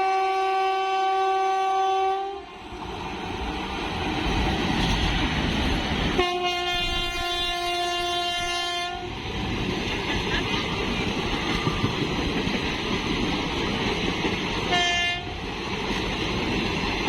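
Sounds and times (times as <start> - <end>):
train horn blowing: 0.0 - 2.5, 6.2 - 9.2, 14.7 - 15.4
train rumbling through station: 0.0 - 17.0.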